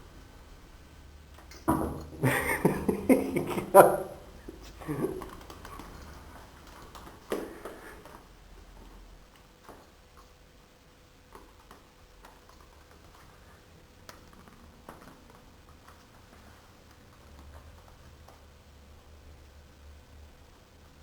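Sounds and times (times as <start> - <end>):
low background hum: 0.0 - 21.0
light clicks and taps: 4.5 - 10.4.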